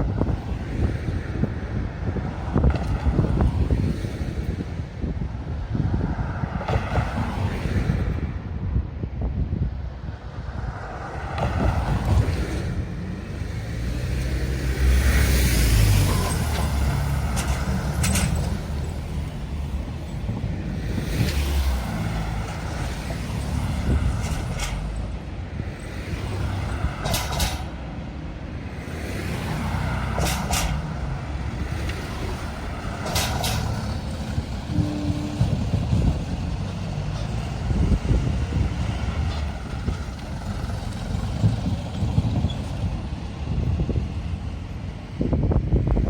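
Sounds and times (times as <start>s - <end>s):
motor vehicles passing: 10.4s - 46.0s.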